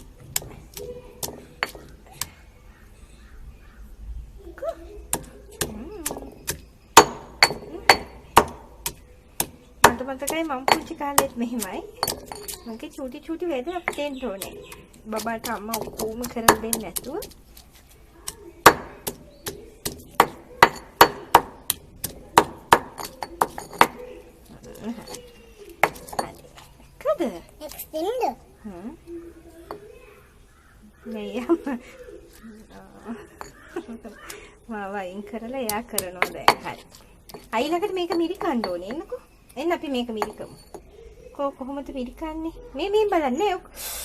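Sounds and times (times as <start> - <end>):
pestle pounding in a mortar: 5.1 - 12.8, 13.8 - 17.4, 18.2 - 24.0, 25.8 - 26.4, 35.5 - 39.1.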